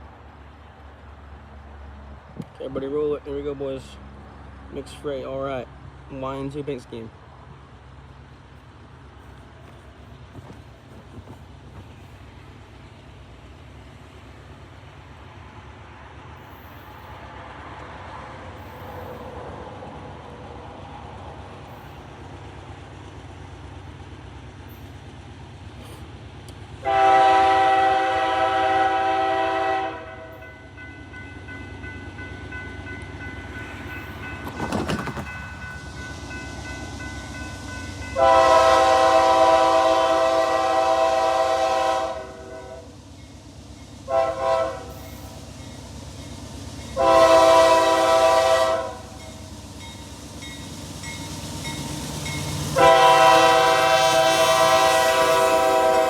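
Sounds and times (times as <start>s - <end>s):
freight train rumbling: 0.0s - 56.0s
locomotive air horn blasts: 26.8s - 30.4s, 38.1s - 42.9s, 44.1s - 45.2s, 47.0s - 49.2s, 52.7s - 56.0s.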